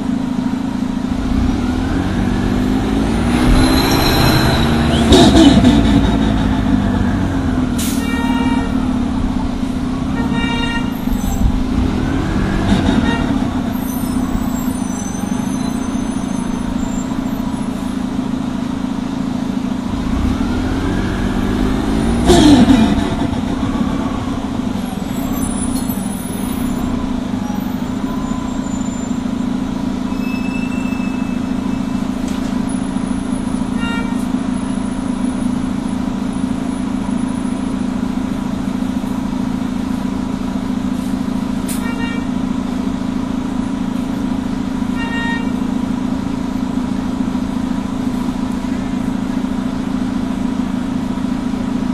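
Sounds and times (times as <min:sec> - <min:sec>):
bus engine droning: 0:00.0 - 0:51.9
loud surge of engine noise: 0:00.1 - 0:18.1, 0:19.8 - 0:33.5.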